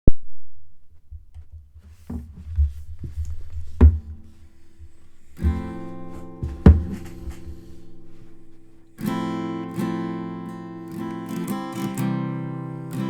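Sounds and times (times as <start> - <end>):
low thumps: 0.8 - 9.2
plucked acoustic guitar: 0.8 - 13.0.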